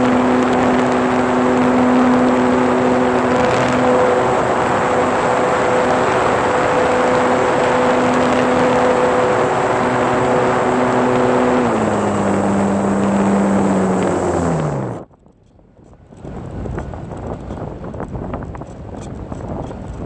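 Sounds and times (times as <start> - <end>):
model plane motor and propeller: 0.0 - 20.0
wind noise on microphone: 0.0 - 20.0.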